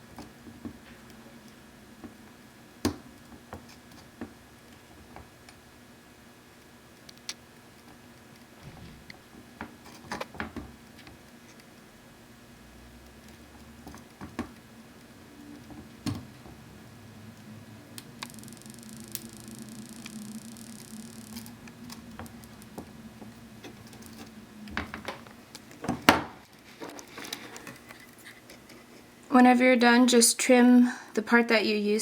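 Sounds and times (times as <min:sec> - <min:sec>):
faint steady hum: 0:00.0 - 0:32.0
soldering iron hiss: 0:18.0 - 0:22.8.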